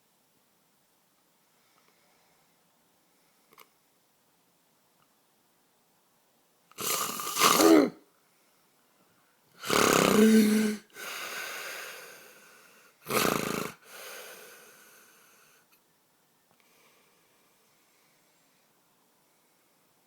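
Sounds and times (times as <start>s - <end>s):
man snoring loudly: 6.8s - 7.9s, 9.6s - 10.9s, 13.1s - 13.9s
soft breath out: 13.8s - 15.7s, 16.6s - 19.8s.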